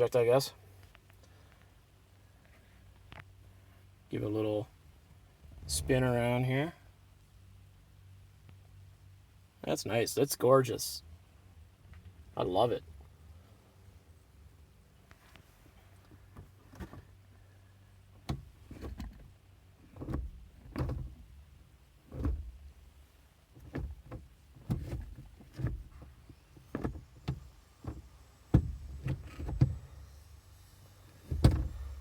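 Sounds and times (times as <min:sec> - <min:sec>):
gear lever clunking: 0:23.6 - 0:30.0, 0:31.2 - 0:32.0.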